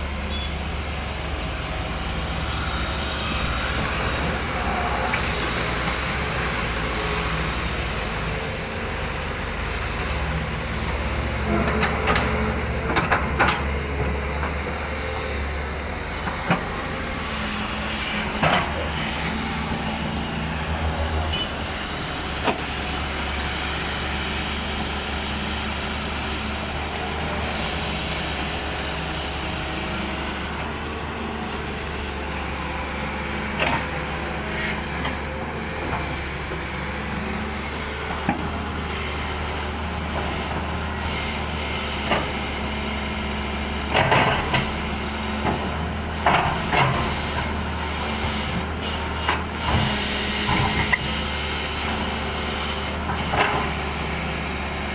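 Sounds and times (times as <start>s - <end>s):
excavator diesel engine running: 0.0s - 54.9s.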